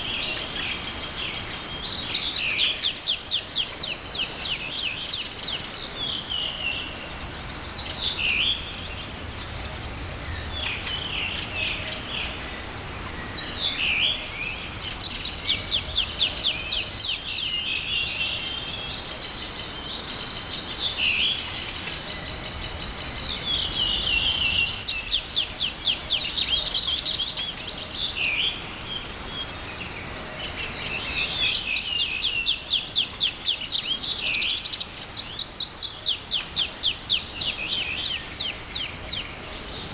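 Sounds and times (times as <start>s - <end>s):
bird chirps and calls: 0.0s - 12.4s, 13.2s - 29.5s, 30.4s - 39.9s.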